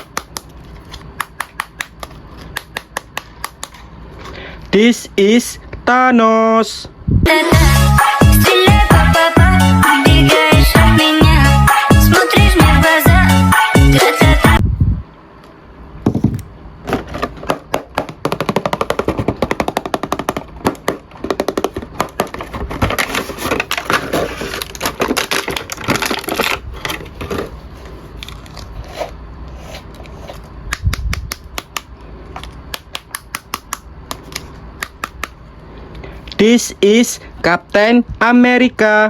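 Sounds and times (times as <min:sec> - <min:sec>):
plastic toys clicking and rattling: 0:18.2 - 0:27.5.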